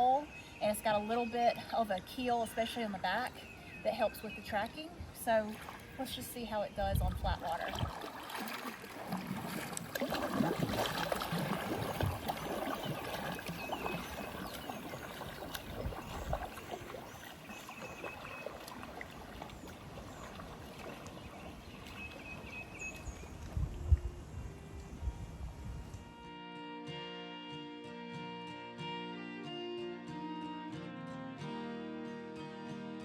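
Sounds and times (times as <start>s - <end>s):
water sloshing around kayak: 0.9s - 26.0s.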